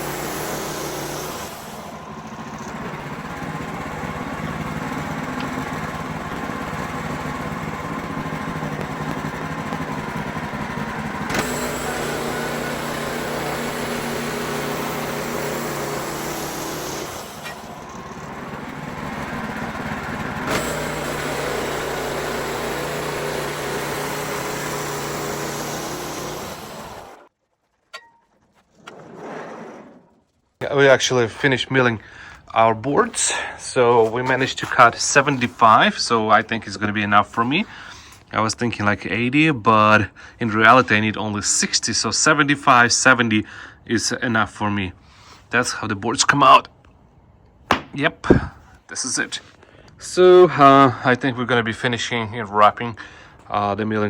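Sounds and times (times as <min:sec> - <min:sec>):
band sawmill sawing log: 0:00.0 - 0:27.3, 0:30.6 - 0:39.9.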